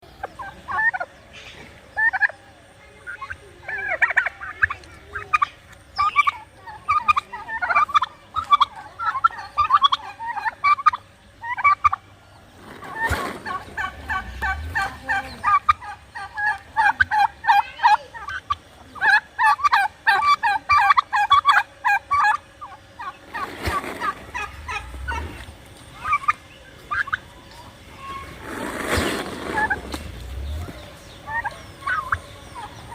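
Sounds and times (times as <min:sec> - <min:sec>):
turkeys gobbling: 0:00.1 - 0:02.4, 0:03.0 - 0:32.9
brief low rumbles: 0:24.0 - 0:25.7, 0:28.9 - 0:31.1.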